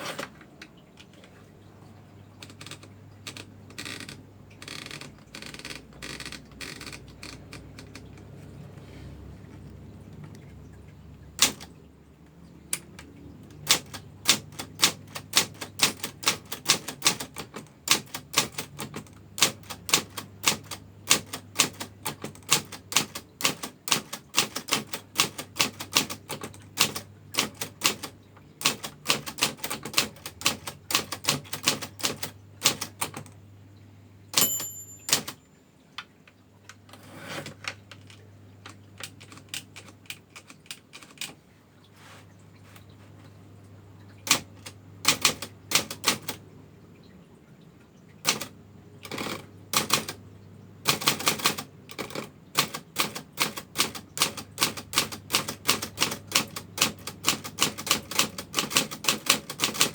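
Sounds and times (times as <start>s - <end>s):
typewriter carriage return rasp: 0.0s - 1.3s, 2.4s - 8.4s, 11.4s - 11.7s, 13.5s - 33.3s, 34.4s - 35.4s, 36.9s - 38.2s, 39.0s - 41.4s, 44.2s - 46.4s, 48.2s - 50.2s, 50.8s - 59.9s
typewriter keystrokes: 2.3s - 8.4s, 11.4s - 11.8s, 12.7s - 33.4s, 34.4s - 35.4s, 37.5s - 41.4s, 44.2s - 46.4s, 48.2s - 50.2s, 50.8s - 59.9s
typewriter margin bell: 34.4s - 35.6s.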